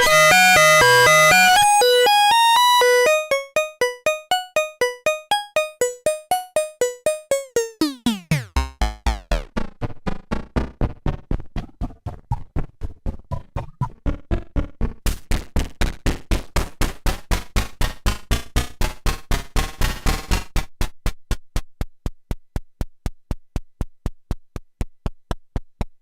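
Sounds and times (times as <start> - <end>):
falling synth pitch sweep: 2.8 - 9.7
synth sequence: 2.8 - 10.0
deep synth bass: 6.8 - 19.7.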